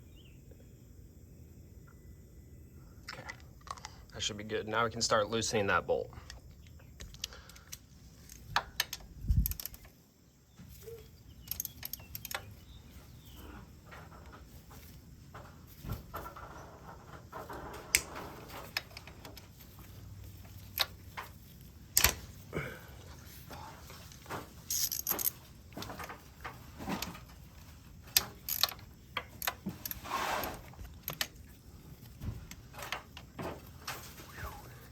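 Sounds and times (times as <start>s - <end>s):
wrench clinking on metal: 24.7s - 25.4s.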